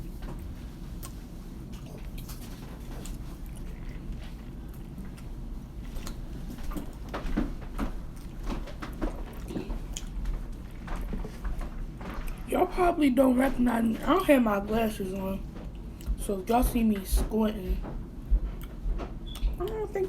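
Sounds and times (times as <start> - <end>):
chewing crunchy food: 0.0 - 12.5
low room hum: 0.0 - 20.0.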